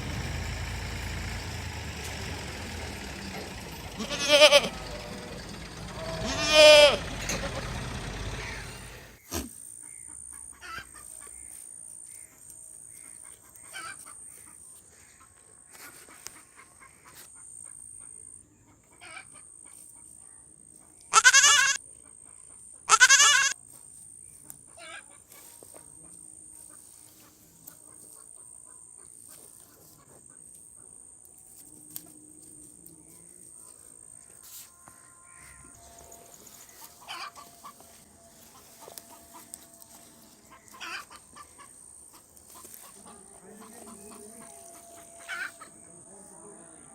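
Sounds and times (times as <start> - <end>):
goats bleating: 1.5 - 9.1, 21.1 - 21.8, 22.9 - 23.6.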